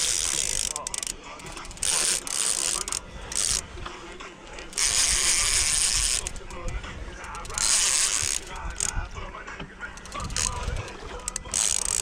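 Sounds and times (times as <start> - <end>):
fishing reel clicking: 0.0 - 3.8, 4.4 - 9.1, 9.8 - 12.0.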